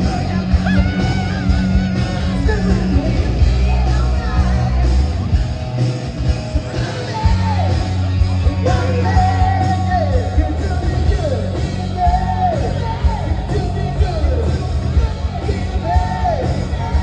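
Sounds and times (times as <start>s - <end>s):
drums beating: 0.0s - 17.0s
rock band playing: 0.0s - 17.0s
singing: 6.8s - 17.0s.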